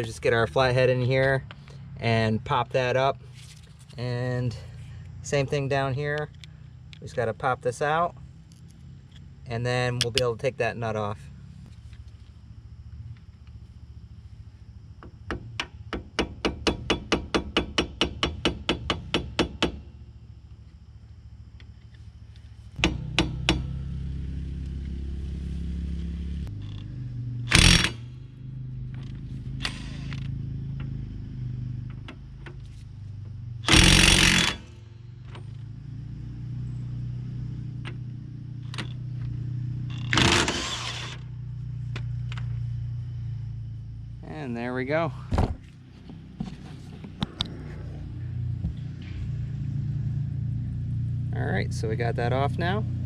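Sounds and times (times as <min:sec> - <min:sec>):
steady low hum: 0:00.0 - 0:53.0
impact wrench hammering: 0:15.0 - 0:19.9, 0:22.8 - 0:23.8, 0:27.5 - 0:28.1, 0:33.6 - 0:34.8.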